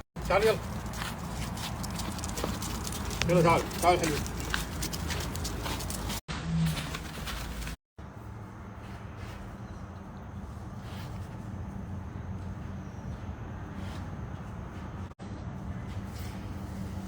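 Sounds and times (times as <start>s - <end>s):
low mechanical hum: 4.3s - 17.0s.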